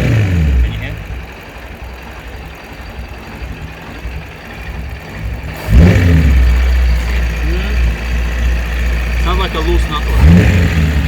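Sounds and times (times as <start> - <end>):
car engine running: 0.0 - 11.0.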